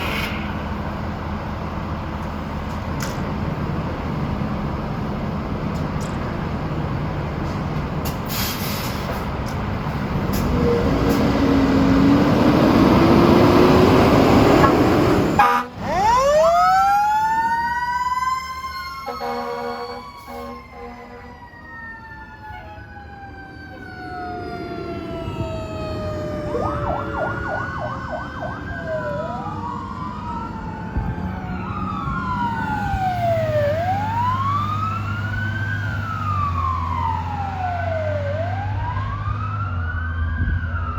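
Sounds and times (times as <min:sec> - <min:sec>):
heavy truck engine: 0:00.0 - 0:16.2, 0:23.6 - 0:40.9
road noise: 0:00.0 - 0:40.9
horn blast: 0:15.4 - 0:15.8
fast warbling siren: 0:15.9 - 0:40.9.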